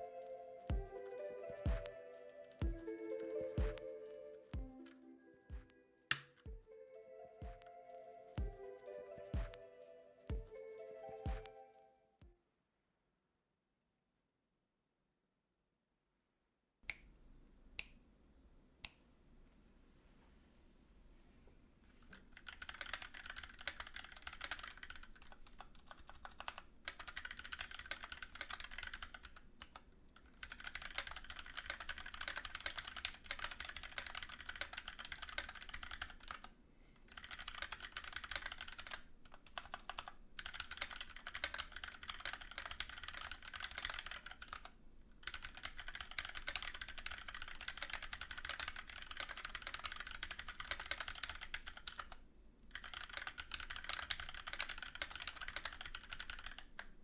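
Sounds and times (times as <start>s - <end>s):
mechanical keyboard typing: 22.2s - 36.5s, 37.1s - 56.9s.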